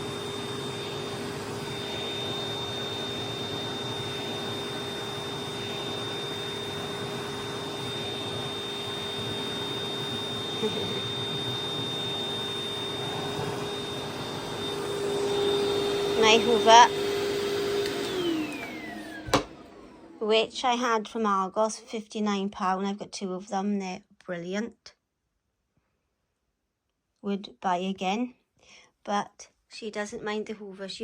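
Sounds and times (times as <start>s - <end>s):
vacuum cleaner running: 0.0s - 20.8s.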